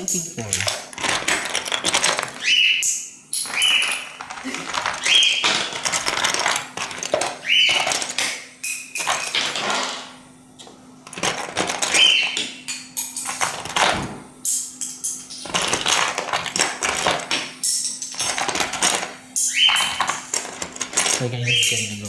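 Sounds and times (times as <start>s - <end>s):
plastic bricks clicking and clattering: 0.1s - 2.3s
bird chirps: 19.4s - 20.0s, 21.3s - 22.0s.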